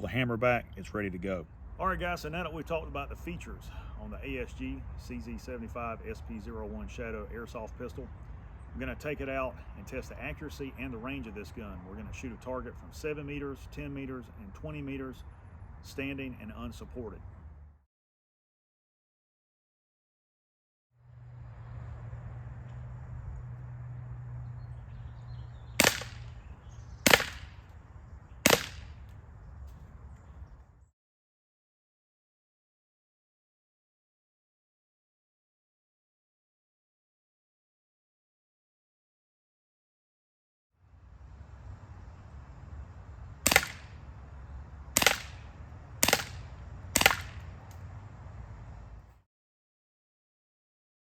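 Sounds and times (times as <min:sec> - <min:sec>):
airsoft pistol pops: 0:25.8 - 0:26.3, 0:27.1 - 0:27.6, 0:28.5 - 0:29.0, 0:43.5 - 0:43.9, 0:45.0 - 0:45.4, 0:46.0 - 0:46.4, 0:47.0 - 0:47.4.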